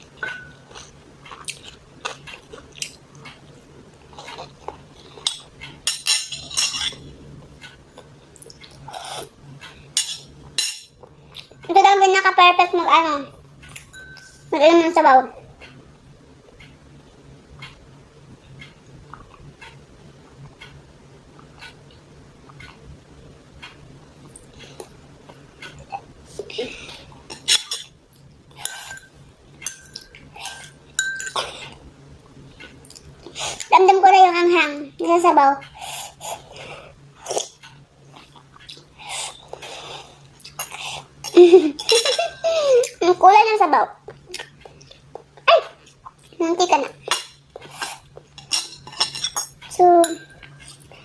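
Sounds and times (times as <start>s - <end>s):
spoon clinking against bowl: 0.2s - 0.6s, 13.9s - 14.4s, 28.6s - 30.2s, 31.0s - 31.4s, 48.4s - 50.8s
dishes and utensil clinking: 0.2s - 0.9s, 5.2s - 7.1s, 10.0s - 11.0s, 13.7s - 14.5s, 28.6s - 31.5s, 41.8s - 42.6s, 48.4s - 50.9s
wet mouth eating sounds: 0.7s - 5.2s, 36.2s - 41.9s.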